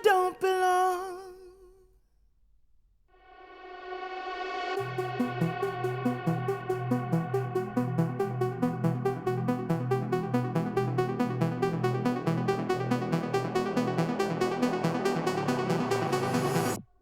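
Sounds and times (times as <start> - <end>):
electronic music through headphones: 4.4 - 16.8.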